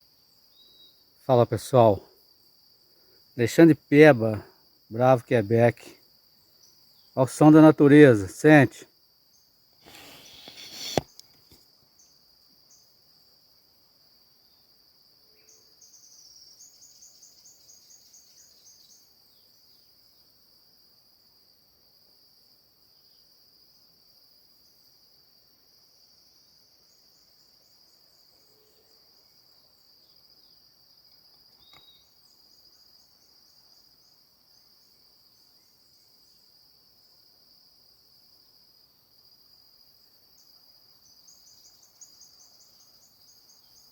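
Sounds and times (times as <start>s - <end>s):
faint chirps: 0.0s - 2.0s, 6.4s - 13.0s, 26.8s - 36.4s
insects chorus: 0.0s - 43.9s
pulsing insect trill: 14.3s - 21.3s, 39.5s - 43.9s.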